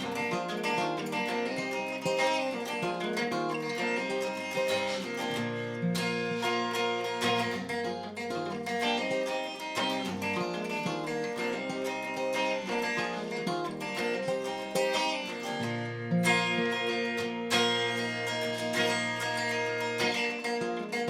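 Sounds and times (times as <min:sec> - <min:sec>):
picked guitar notes: 0:00.0 - 0:21.0
strummed acoustic guitar: 0:00.0 - 0:21.0.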